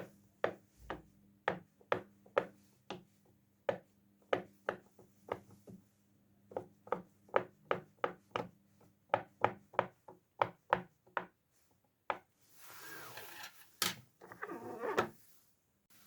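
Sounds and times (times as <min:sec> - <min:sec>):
rustling scrape: 0:12.4 - 0:13.8.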